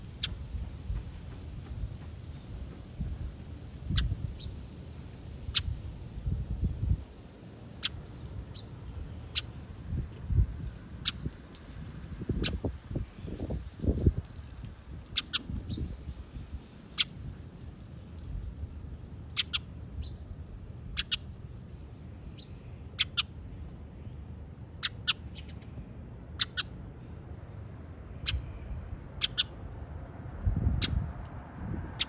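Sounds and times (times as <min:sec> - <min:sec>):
low steady rumble: 0:00.0 - 0:32.0
high animal peeps: 0:15.1 - 0:15.9, 0:19.3 - 0:20.2, 0:20.9 - 0:21.3, 0:26.4 - 0:26.8, 0:29.2 - 0:29.6.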